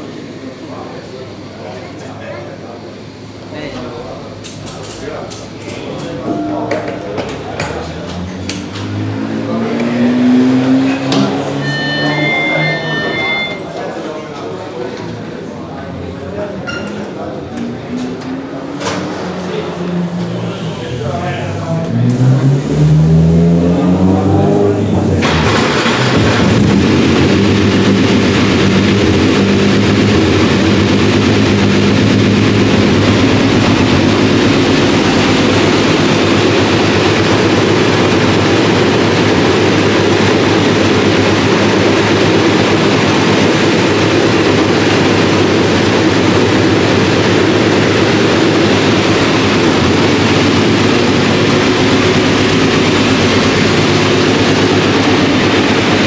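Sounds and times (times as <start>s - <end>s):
race car engine idling: 20.0s - 56.0s.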